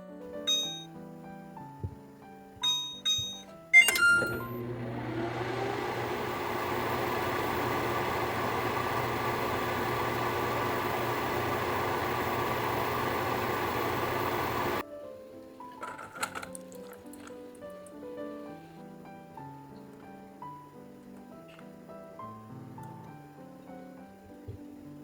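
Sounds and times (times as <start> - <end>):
microwave oven humming: 3.2 - 14.8.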